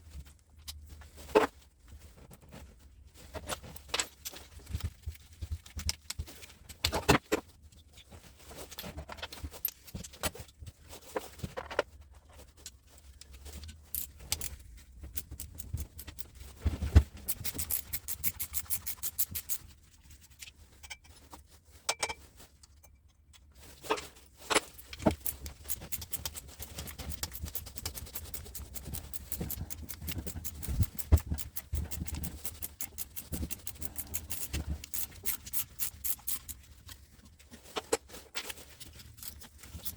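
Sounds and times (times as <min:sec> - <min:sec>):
hand tools clicking and clinking: 0:13.6 - 0:16.4, 0:17.2 - 0:19.6, 0:24.5 - 0:36.7, 0:37.8 - 0:39.9.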